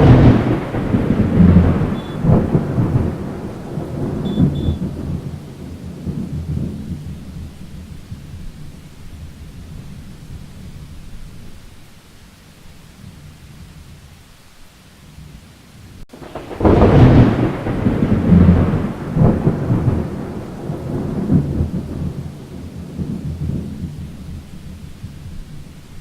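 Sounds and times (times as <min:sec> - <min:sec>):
thunderclap: 0:00.0 - 0:10.7, 0:16.1 - 0:25.8
steady rain: 0:00.0 - 0:26.0.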